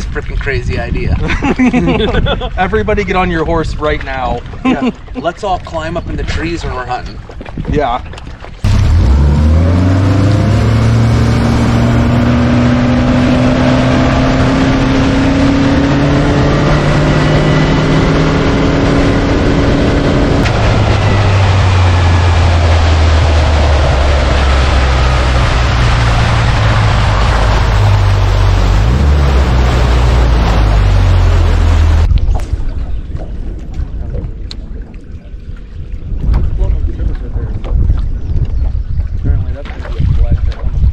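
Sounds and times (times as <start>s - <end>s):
rush of wind and water: 0.0s - 40.9s
outboard motor running at speed: 7.2s - 34.5s.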